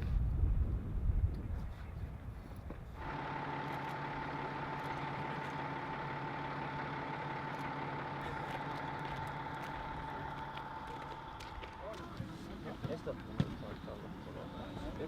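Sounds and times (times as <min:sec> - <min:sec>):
machine humming with whine: 0:03.0 - 0:15.0.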